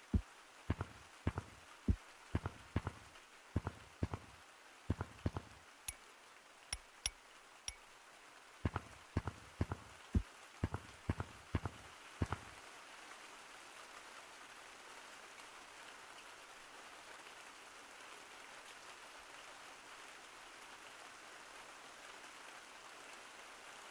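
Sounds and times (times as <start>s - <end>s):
sharp knocks: 0.0s - 4.3s, 4.9s - 5.6s, 8.7s - 10.0s, 10.6s - 12.5s
faint rain-like hiss: 0.0s - 23.9s.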